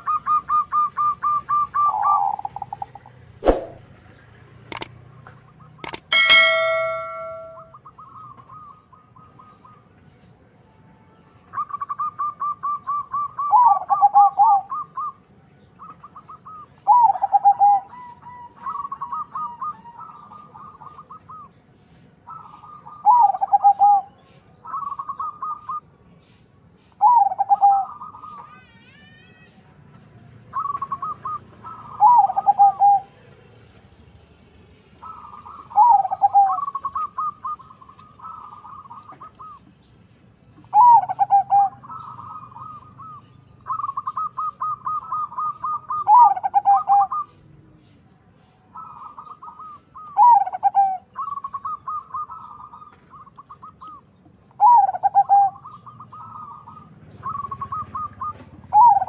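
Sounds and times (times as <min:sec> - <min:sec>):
dove cooing: 0:00.0 - 0:03.6, 0:11.6 - 0:15.1, 0:15.8 - 0:21.5, 0:22.3 - 0:25.8, 0:27.0 - 0:28.4, 0:30.6 - 0:33.2, 0:35.0 - 0:39.6, 0:40.6 - 0:47.4, 0:48.8 - 0:54.0, 0:54.6 - 0:59.0.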